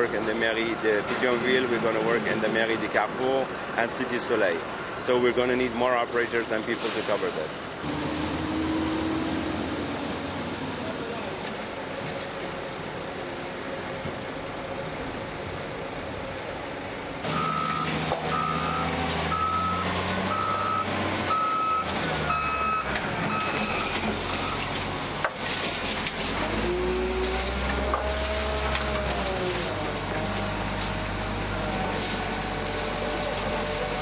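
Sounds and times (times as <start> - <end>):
heavy machine engine running: 0.0 - 34.0
reversing alarm beeping: 17.3 - 24.6.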